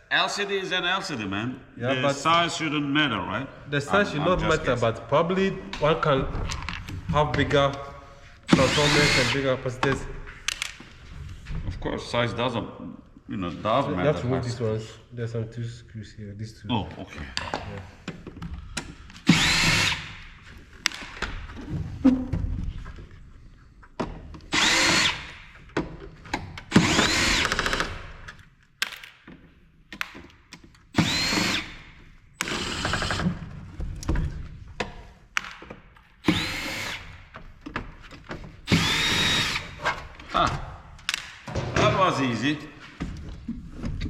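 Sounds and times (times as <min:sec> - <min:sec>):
power drill whining: 0:08.5 - 0:09.5, 0:19.2 - 0:20.3, 0:24.5 - 0:25.4, 0:26.6 - 0:28.0, 0:31.0 - 0:31.8, 0:32.4 - 0:33.4, 0:36.2 - 0:37.2, 0:38.7 - 0:39.8.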